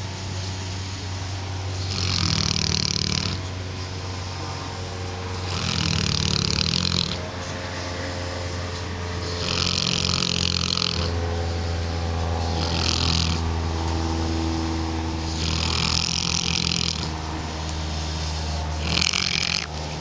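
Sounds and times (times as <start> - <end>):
dog snoring: 1.6 - 3.7, 5.3 - 7.5, 9.2 - 17.3, 18.1 - 20.0.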